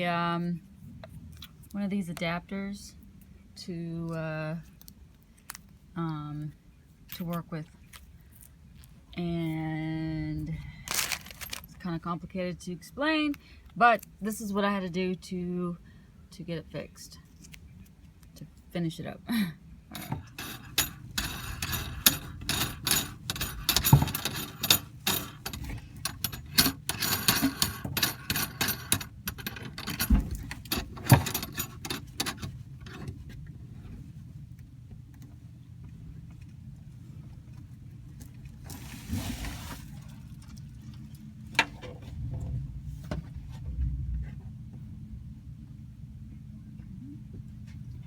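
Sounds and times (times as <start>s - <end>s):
steady low hum: 0.0s - 48.0s
metal parts clinking: 10.9s - 11.8s, 19.9s - 33.1s.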